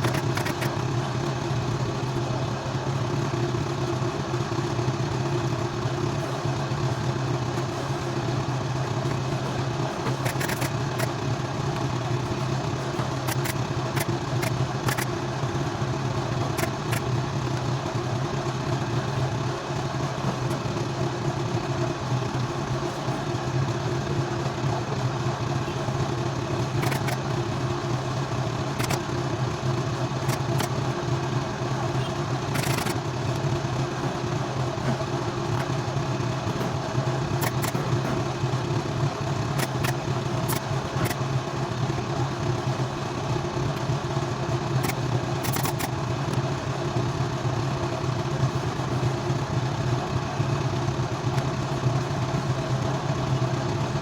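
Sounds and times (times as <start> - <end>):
sharp clicks: 0.0 - 0.8, 10.1 - 11.1, 13.2 - 15.1, 26.8 - 27.2, 28.8 - 29.0, 32.5 - 33.4, 37.4 - 37.8, 39.5 - 41.2, 44.8 - 45.9
engine drone: 0.0 - 54.0.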